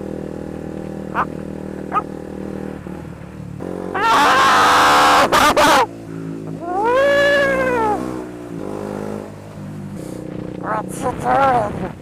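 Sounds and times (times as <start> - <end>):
motorcycle engine running: 0.0 - 12.0
man yowling: 3.9 - 5.9, 6.6 - 8.2.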